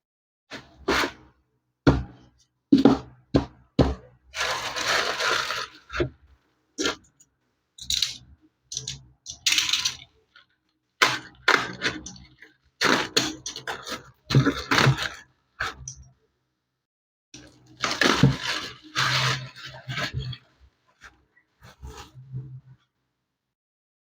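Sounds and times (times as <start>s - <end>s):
packaging rustle: 4.4s - 6.0s.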